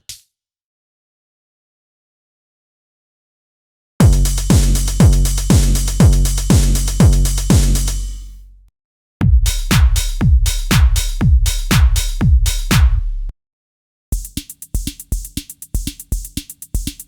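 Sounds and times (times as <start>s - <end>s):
drum machine kick drums: 4.0s - 8.2s, 9.2s - 13.1s, 14.1s - 17.0s
busy drum machine loop: 4.0s - 8.3s, 9.3s - 13.0s, 14.1s - 17.0s.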